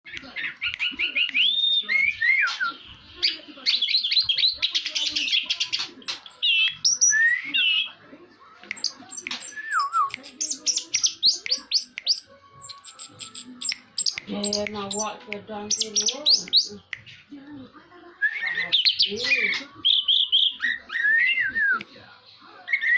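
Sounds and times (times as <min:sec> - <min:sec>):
thrush singing: 0:08.6 - 0:17.0.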